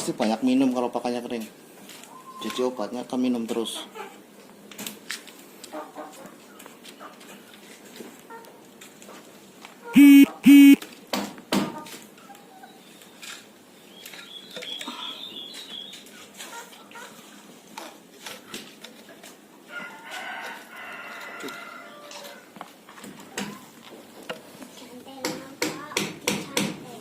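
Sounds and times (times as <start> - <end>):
chickens clucking: 5.6 - 10.8, 14.7 - 18.8
higher chirping: 10.0 - 10.8
loud short even-pitched sounds: 10.0 - 10.8.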